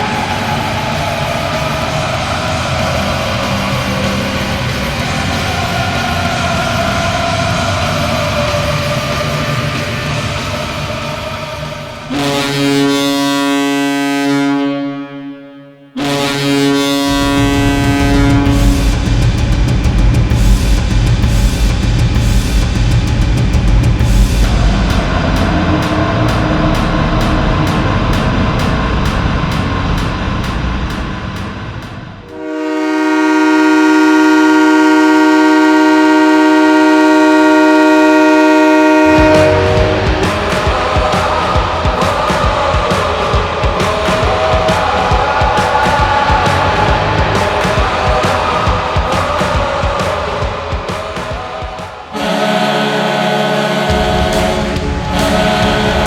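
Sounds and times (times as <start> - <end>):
music: 0.0 - 13.6, 15.2 - 32.8, 35.9 - 56.0
goal horn blasts: 12.1 - 18.8, 32.3 - 40.6, 52.2 - 56.0.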